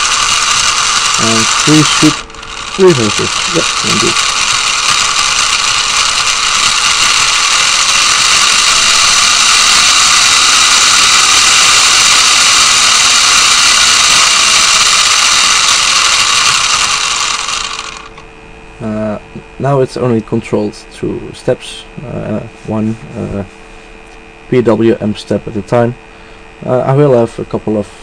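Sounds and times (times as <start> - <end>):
toy car motor buzzing: 0.0 - 20.6.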